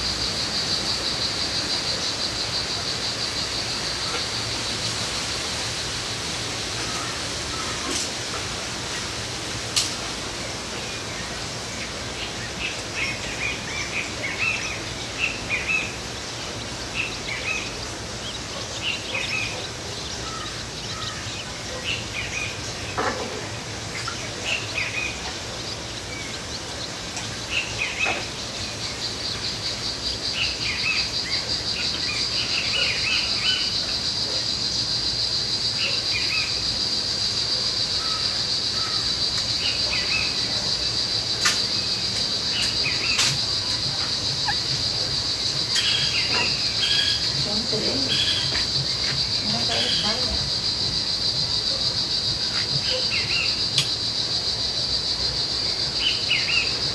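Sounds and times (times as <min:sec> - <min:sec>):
small birds chirping: 0:10.5 - 0:56.9.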